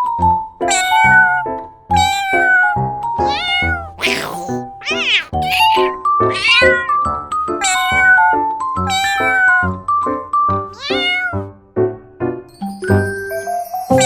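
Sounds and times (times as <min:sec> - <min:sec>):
cat meowing: 0:02.0 - 0:09.8, 0:10.8 - 0:11.5.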